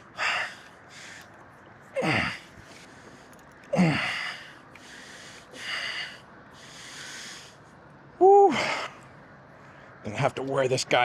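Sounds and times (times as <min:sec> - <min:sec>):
man breathing hard: 0:00.0 - 0:07.7.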